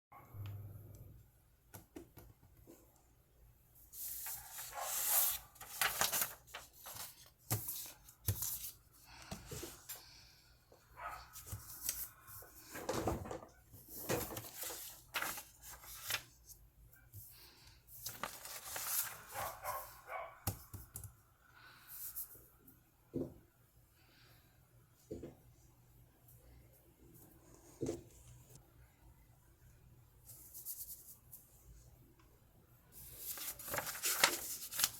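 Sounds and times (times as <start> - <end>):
paper rustling and crinkling: 3.9 - 10.2, 11.3 - 16.6, 18.0 - 19.9, 33.0 - 34.9.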